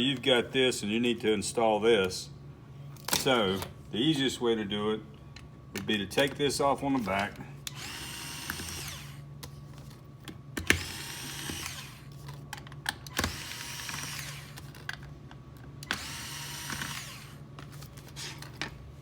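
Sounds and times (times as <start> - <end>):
power drill backing out screws: 10.6 - 12.0, 15.8 - 17.4.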